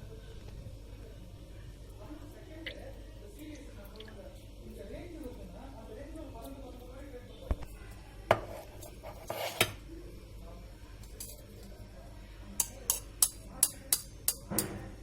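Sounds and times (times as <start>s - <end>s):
metal spoon clinking against dish: 11.0s - 11.6s, 12.6s - 14.8s.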